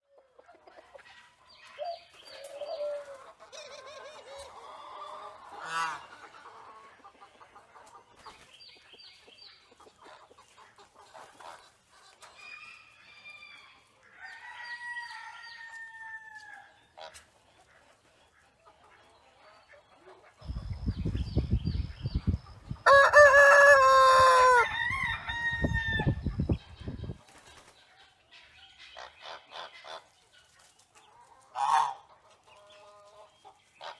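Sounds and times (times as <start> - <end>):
chickens clucking and calling: 0.0 - 33.9
rooster crowing: 14.2 - 16.7, 22.8 - 26.2.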